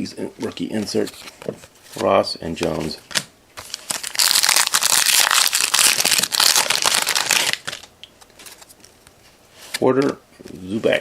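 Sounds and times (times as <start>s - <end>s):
foil wrapper crinkling: 3.6s - 8.7s.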